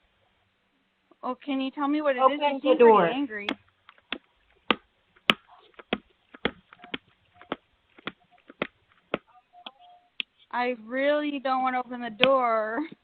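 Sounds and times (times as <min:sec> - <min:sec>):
sharp knocks: 0:03.5 - 0:09.3.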